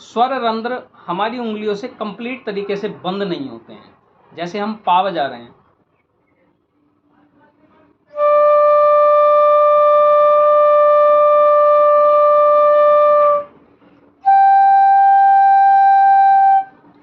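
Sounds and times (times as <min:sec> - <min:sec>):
bamboo flute held notes: 0:08.1 - 0:13.6, 0:14.2 - 0:16.9.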